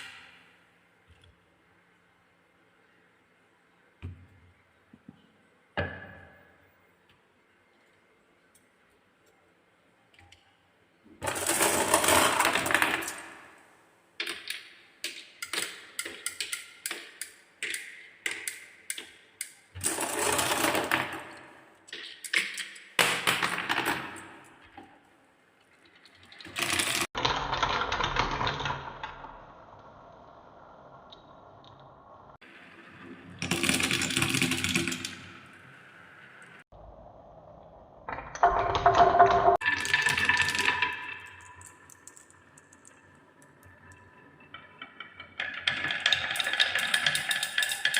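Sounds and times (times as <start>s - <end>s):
balls rattling down wooden marble run: 11.2s - 13.5s, 19.8s - 24.4s, 26.2s - 27.5s, 38.2s - 47.9s.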